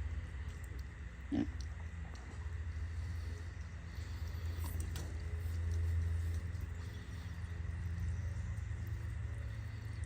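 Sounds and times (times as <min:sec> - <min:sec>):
steady low rumble: 0:00.0 - 0:10.0
pig grunting: 0:01.2 - 0:01.6.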